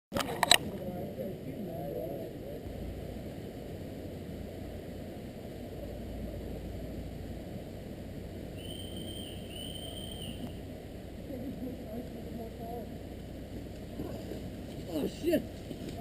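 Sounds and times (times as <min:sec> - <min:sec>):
steady low microphone noise: 0:00.1 - 0:16.0
short high whistle-like tones: 0:08.6 - 0:10.6.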